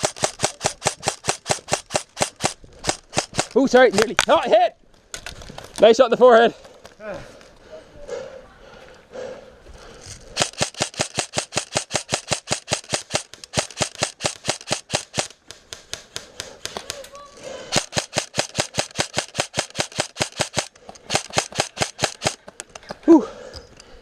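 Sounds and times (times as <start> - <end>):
airsoft rifle automatic fire: 0.0 - 3.6, 10.4 - 15.4, 17.7 - 22.4.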